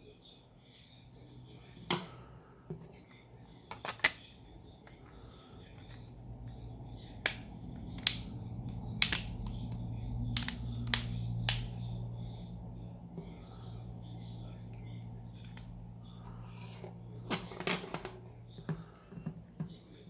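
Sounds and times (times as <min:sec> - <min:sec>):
low steady hum: 0:00.0 - 0:20.0
plastic phone parts clicking: 0:03.7 - 0:04.3, 0:07.2 - 0:11.7.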